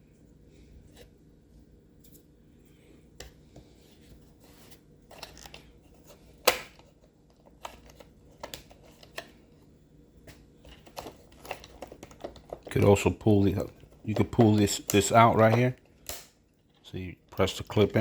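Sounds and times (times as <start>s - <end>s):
plastic parts clicking and knocking: 10.7s - 12.9s.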